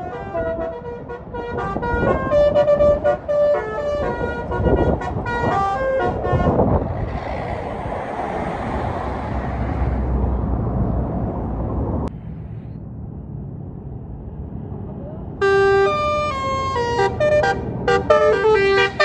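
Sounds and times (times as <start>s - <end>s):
bus melody horn: 0.0s - 6.7s, 15.4s - 19.0s.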